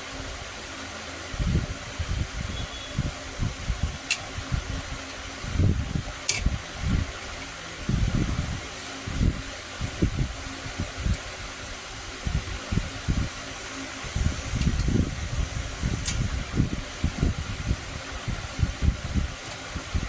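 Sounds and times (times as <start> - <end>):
cooling fan humming: 0.0 - 20.0.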